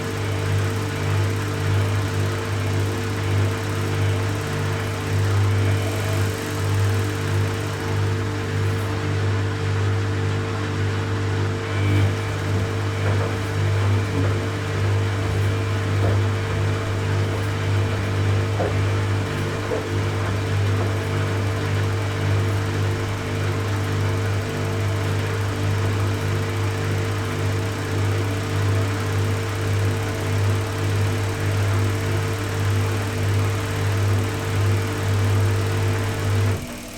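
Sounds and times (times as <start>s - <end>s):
washing machine spinning: 0.0s - 36.9s.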